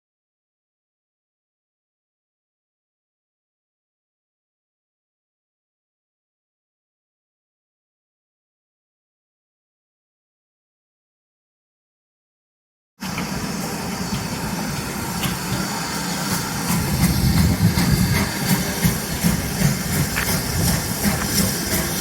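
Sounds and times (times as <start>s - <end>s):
locomotive running: 13.0s - 22.0s.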